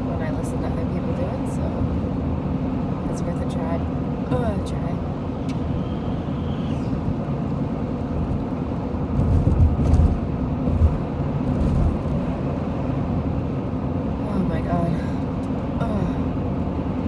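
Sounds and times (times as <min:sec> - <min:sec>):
car road and engine noise: 0:00.0 - 0:17.0
low thuds: 0:09.1 - 0:12.4.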